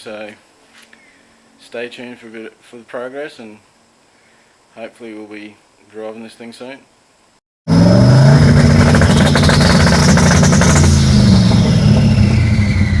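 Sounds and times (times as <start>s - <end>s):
car engine revving: 7.7s - 13.0s
high whine: 7.7s - 13.0s.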